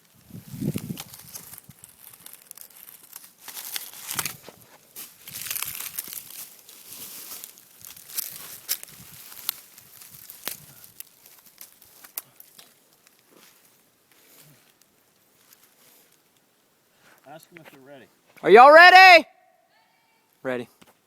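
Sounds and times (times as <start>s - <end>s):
rustling crinkling: 0.0s - 18.4s
sharp clicks and crackles: 0.8s - 4.4s, 7.9s - 13.2s.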